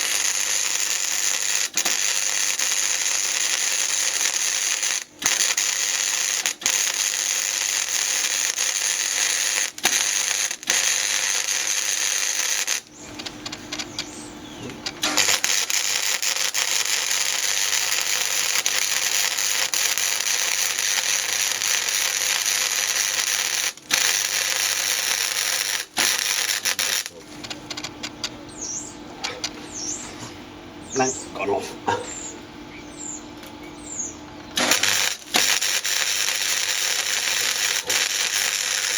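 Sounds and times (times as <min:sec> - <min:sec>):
arc welding crackle and hiss: 0:00.0 - 0:30.4, 0:33.0 - 0:38.9.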